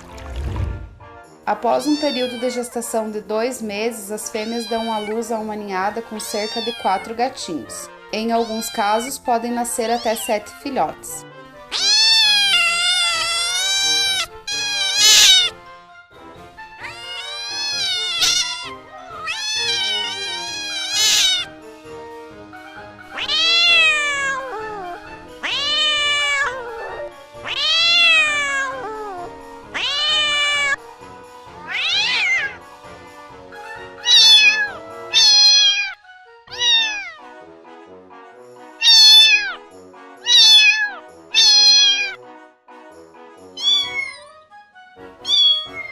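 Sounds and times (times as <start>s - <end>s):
cat meowing: 1.8s - 2.8s, 4.3s - 5.3s, 5.9s - 7.2s, 8.2s - 10.4s, 11.7s - 15.6s, 16.8s - 21.5s, 22.9s - 30.8s, 31.6s - 32.6s, 33.8s - 37.3s, 38.8s - 39.6s, 40.2s - 42.2s, 43.5s - 44.4s, 45.2s - 45.9s.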